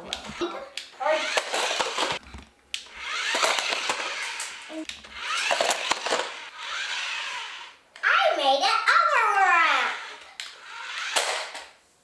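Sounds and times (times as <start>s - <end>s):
toy car electric motor whirring: 1.0s - 2.2s, 2.8s - 7.8s, 9.2s - 11.8s.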